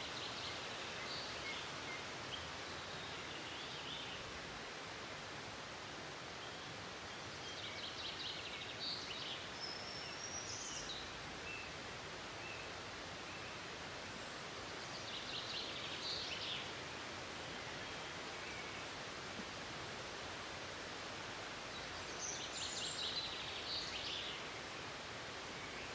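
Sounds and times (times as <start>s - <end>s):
songbirds chirping: 21.2s - 25.9s.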